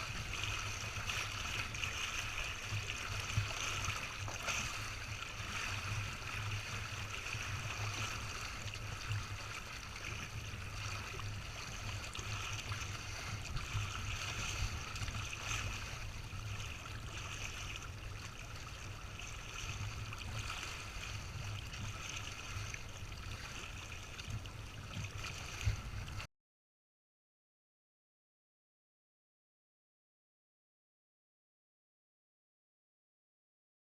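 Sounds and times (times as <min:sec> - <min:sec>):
water rushing along boat hulls: 0:00.0 - 0:26.3
wind rumble on microphone: 0:00.0 - 0:26.3.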